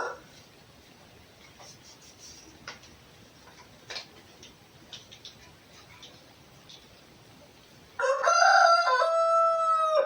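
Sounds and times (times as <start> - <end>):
faint clicks and ticks: 2.6 - 7.1.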